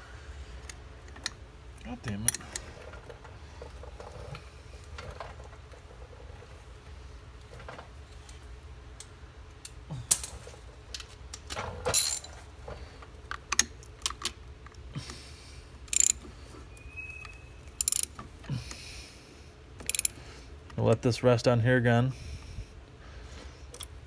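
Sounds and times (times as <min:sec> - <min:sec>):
metal tools clinking: 0:11.8 - 0:12.4, 0:15.9 - 0:16.2, 0:17.8 - 0:18.2, 0:19.8 - 0:20.2.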